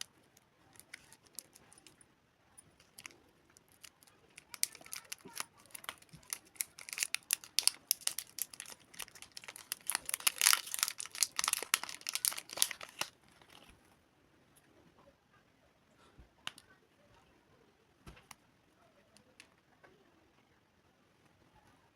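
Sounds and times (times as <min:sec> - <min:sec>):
candy wrapper crinkling: 0:00.0 - 0:02.0, 0:02.7 - 0:13.7.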